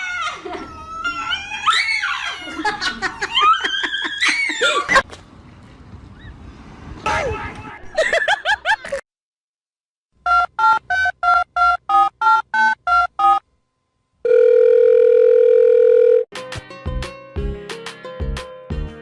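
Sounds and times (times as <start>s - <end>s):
steady phone tone: 14.2s - 16.3s
music: 16.3s - 19.0s.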